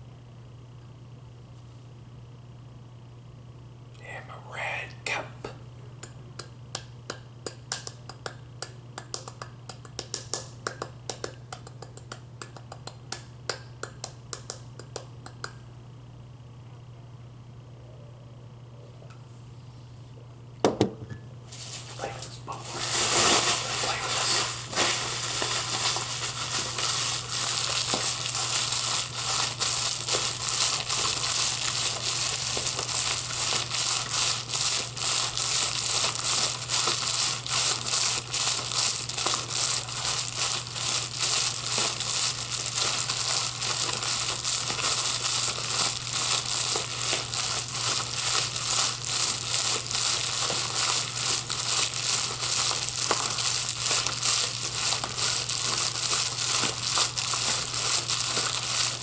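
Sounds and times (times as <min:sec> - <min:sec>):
steady low hum: 0:00.0 - 0:59.0
bubble wrap crackling and popping: 0:21.5 - 0:59.0.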